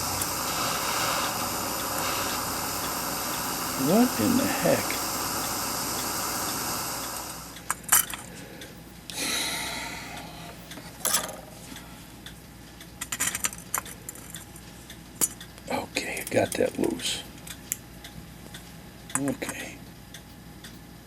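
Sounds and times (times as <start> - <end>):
steady hiss: 0.0 - 7.8.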